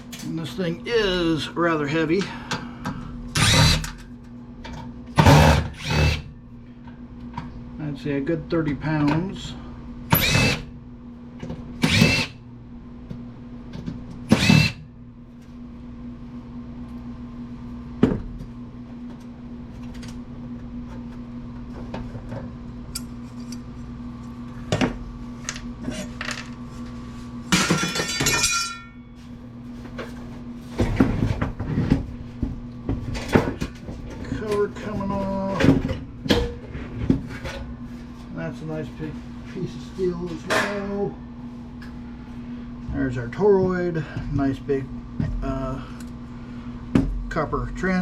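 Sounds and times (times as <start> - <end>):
steady low hum: 0.0 - 48.0
power drill whirring: 3.4 - 4.0, 5.2 - 6.3, 10.1 - 10.7, 11.8 - 12.4, 14.3 - 14.8.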